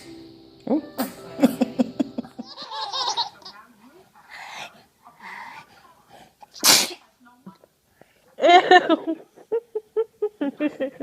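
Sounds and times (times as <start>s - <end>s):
person laughing: 1.4s - 3.2s.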